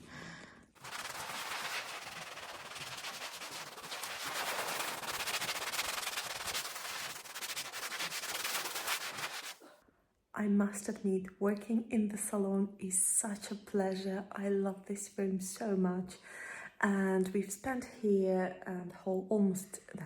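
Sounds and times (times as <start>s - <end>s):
scrubbing on tiles: 0.8s - 9.6s.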